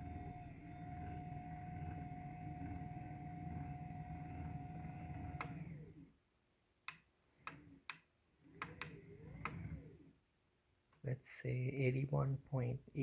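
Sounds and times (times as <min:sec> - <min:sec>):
desk motor stopping click: 0:00.0 - 0:05.9, 0:08.6 - 0:09.8
desk lifting motor humming: 0:00.0 - 0:06.1, 0:08.5 - 0:10.0.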